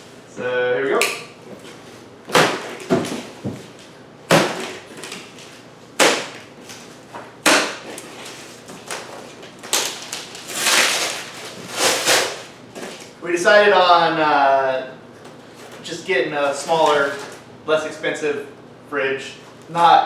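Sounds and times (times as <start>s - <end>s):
cardboard box tearing: 8.0s - 13.0s.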